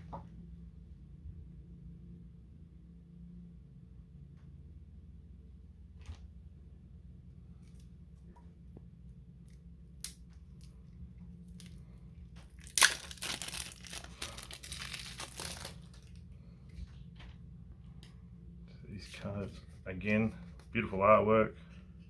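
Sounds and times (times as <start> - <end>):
plastic wrapping tearing and crinkling: 12.6 - 16.2.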